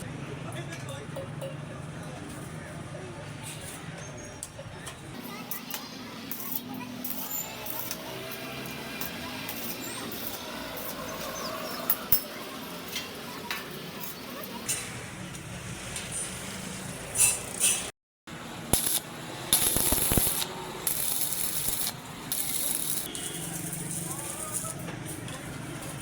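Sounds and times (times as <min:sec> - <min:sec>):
hissing bursts: 0:18.6 - 0:23.1
sharp clicks: 0:18.8 - 0:23.1.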